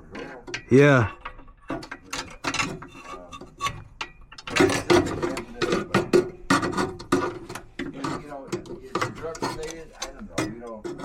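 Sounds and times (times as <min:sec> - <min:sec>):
rapid mechanical clicking and rattling: 0:04.3 - 0:11.0.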